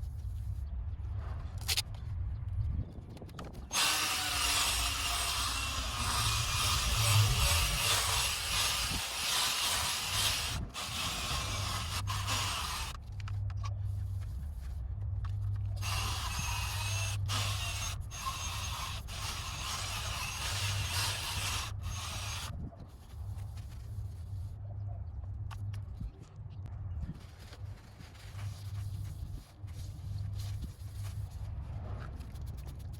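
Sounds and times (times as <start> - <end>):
drill motor hum: 3.7 - 13.0, 15.8 - 22.5
abrasive pad scraping plastic: 3.7 - 14.2.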